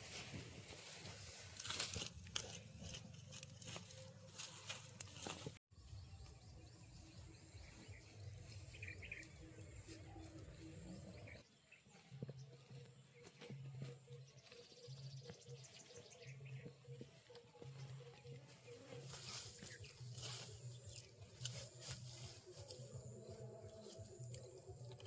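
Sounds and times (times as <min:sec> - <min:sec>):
outdoor ambience: 0:00.0 - 0:25.0
plants and dry leaves tearing: 0:01.1 - 0:05.6
bird chirp: 0:03.3 - 0:25.0.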